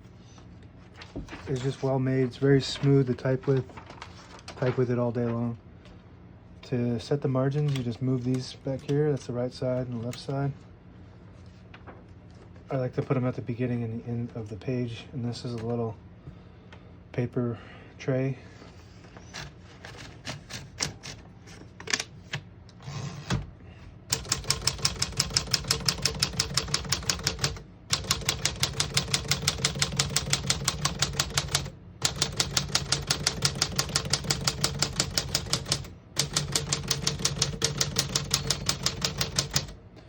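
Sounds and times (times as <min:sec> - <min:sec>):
manual typewriter keystrokes: 0:24.1 - 0:39.8.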